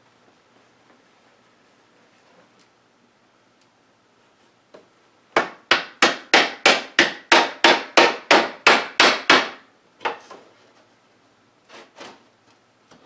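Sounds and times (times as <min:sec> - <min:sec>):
hammer striking wood: 0:05.4 - 0:10.2.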